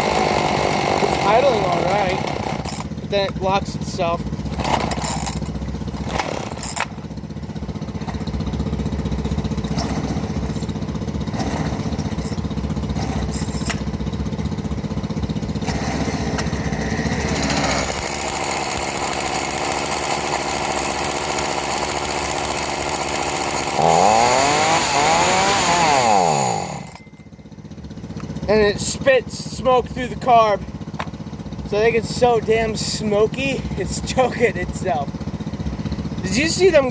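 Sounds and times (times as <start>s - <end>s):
chainsaw idling and revving: 0.0s - 36.9s.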